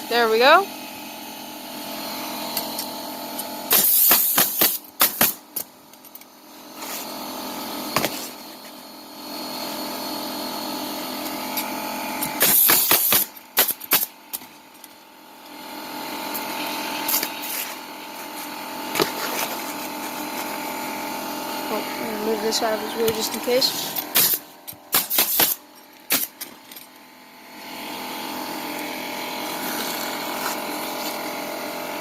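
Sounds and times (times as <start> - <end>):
pneumatic nailer shots: 2.3 - 5.7, 7.9 - 8.5, 11.4 - 14.6, 16.3 - 19.6, 24.0 - 26.8
steady hum: 12.2 - 32.0.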